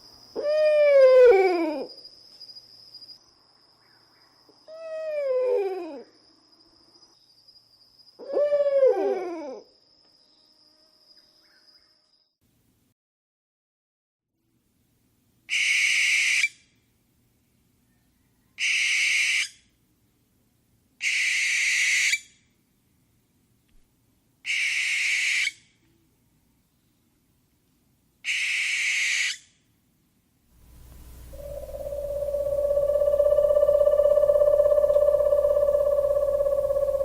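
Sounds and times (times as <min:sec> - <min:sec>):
owl screeching: 0:18.6 - 0:19.5, 0:21.0 - 0:22.2, 0:24.5 - 0:25.6, 0:28.3 - 0:29.4, 0:30.8 - 0:37.0
steady tone: 0:30.6 - 0:37.0.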